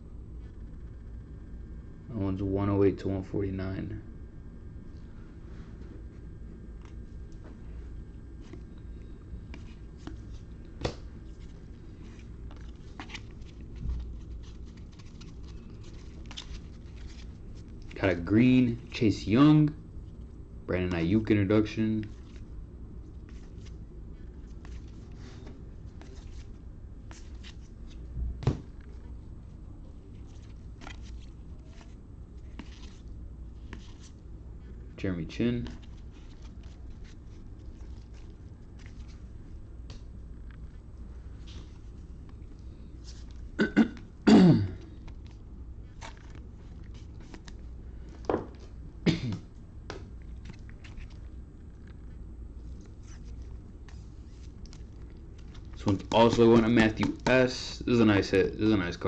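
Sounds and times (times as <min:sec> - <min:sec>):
low steady hum: 0:00.0 - 0:59.0
cards clicking and sliding: 0:09.5 - 0:18.0, 0:52.7 - 0:57.4
man coughing: 0:43.6 - 0:44.9, 0:49.0 - 0:49.5.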